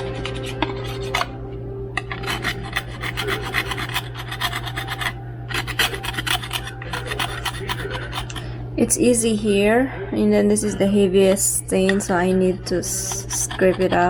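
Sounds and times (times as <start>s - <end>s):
scraper scraping a surface: 0.0s - 1.3s, 2.2s - 8.4s.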